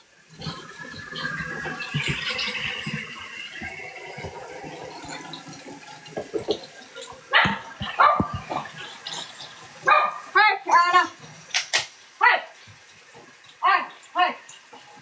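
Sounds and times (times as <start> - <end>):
faint running water: 0.0 - 15.0
dog barking: 7.3 - 8.7, 9.8 - 10.4.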